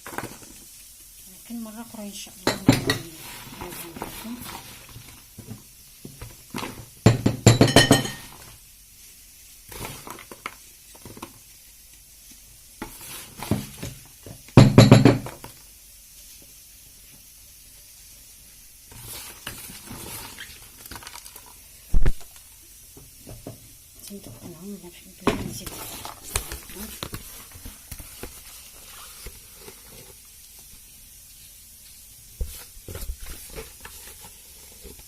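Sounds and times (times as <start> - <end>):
glass jars and utensils clinking: 2.4 - 3.1, 7.1 - 8.4.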